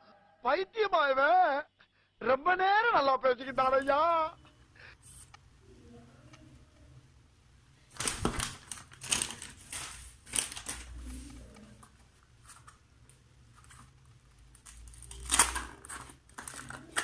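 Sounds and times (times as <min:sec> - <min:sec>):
packaging tearing: 0:07.9 - 0:11.1, 0:14.5 - 0:17.0
packaging rustling and crackling: 0:07.9 - 0:17.0.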